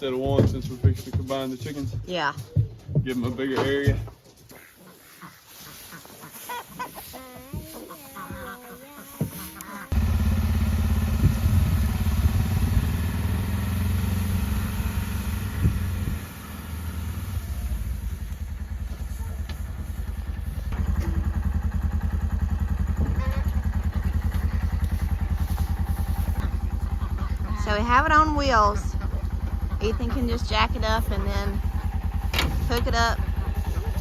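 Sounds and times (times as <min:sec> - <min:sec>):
vehicle engine puttering: 0:09.3 - 0:34.0.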